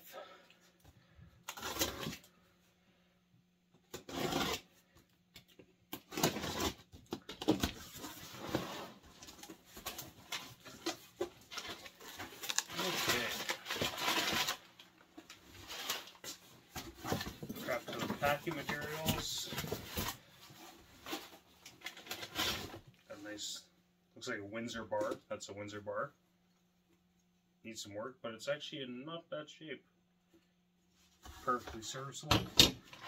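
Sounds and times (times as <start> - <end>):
cardboard and packing rustling: 3.9 - 23.4.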